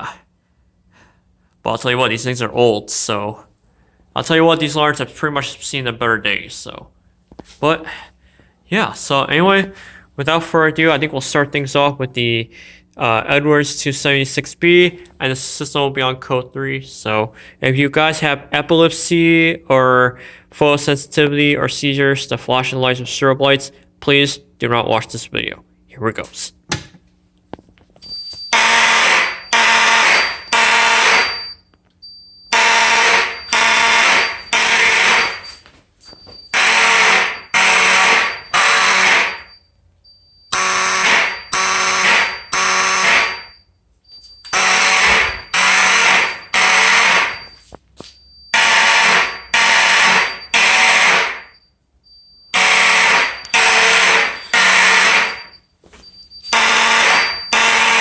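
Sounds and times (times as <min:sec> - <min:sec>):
fire alarm horn blasts: 0:28.0 - 0:47.7, 0:48.4 - 0:58.0.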